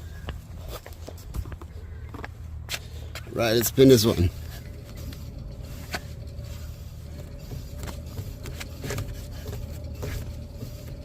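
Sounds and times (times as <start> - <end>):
wheel hub grinding drone: 0.0 - 11.0.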